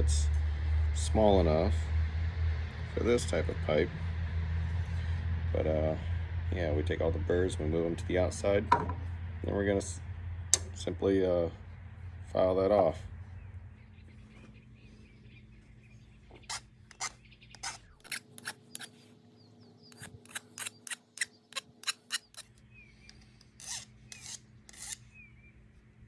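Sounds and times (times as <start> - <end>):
hand file rasping on metal: 18.0 - 19.0, 19.9 - 22.6.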